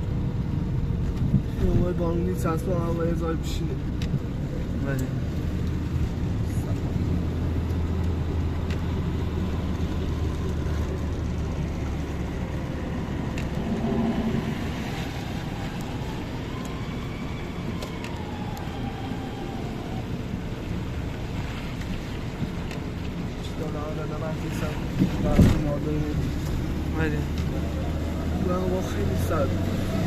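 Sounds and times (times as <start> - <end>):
road traffic: 0.0 - 30.0
vehicle engine low rumble: 0.0 - 30.0
faint rising and falling tone: 12.4 - 17.3.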